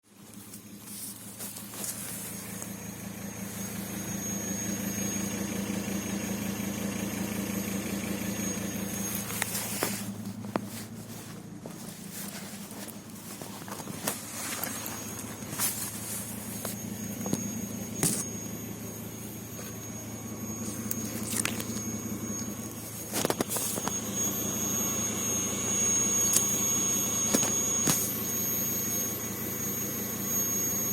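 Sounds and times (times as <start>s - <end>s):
engine humming: 0.0s - 30.9s
high-pitched whistle: 14.8s - 30.9s.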